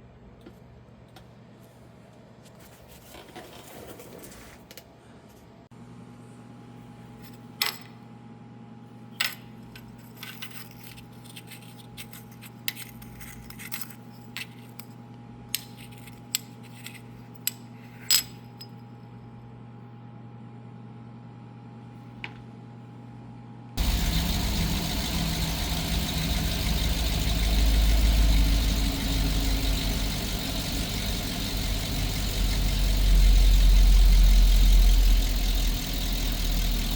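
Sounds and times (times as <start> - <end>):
steady low hum: 19.3 - 36.9.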